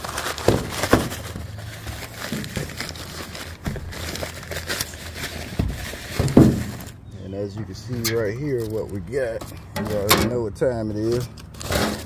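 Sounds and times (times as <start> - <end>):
packing material crinkling: 0.0 - 7.0.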